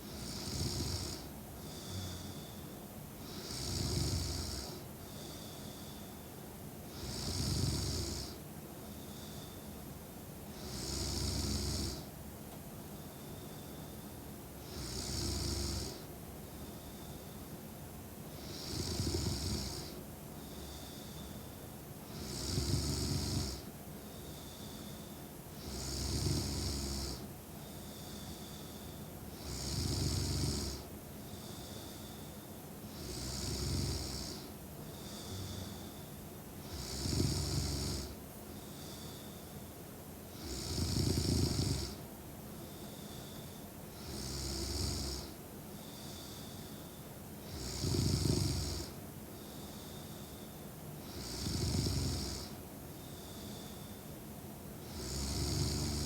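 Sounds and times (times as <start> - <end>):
woman snoring: 0.1 - 2.6, 3.3 - 5.6, 6.9 - 8.4, 10.6 - 12.1, 14.6 - 16.1, 18.4 - 21.4, 22.1 - 32.3, 32.9 - 38.2, 40.3 - 42.0, 43.0 - 54.0, 54.8 - 56.0
faint thin whistle on breaths: 1.6 - 2.8, 5.0 - 6.4, 8.8 - 10.0, 12.8 - 14.4, 16.4 - 17.7, 20.3 - 21.8, 24.0 - 25.4, 27.6 - 29.6, 31.2 - 32.7, 34.8 - 36.3, 37.8 - 39.8, 42.6 - 43.8, 45.7 - 47.2, 49.4 - 51.3, 52.9 - 54.2.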